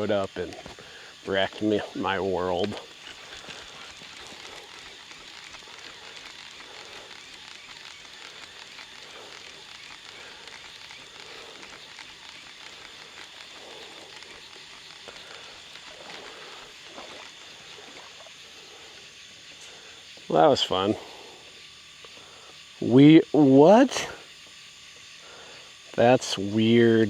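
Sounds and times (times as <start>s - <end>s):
outdoor crackling hiss: 0.0s - 27.0s.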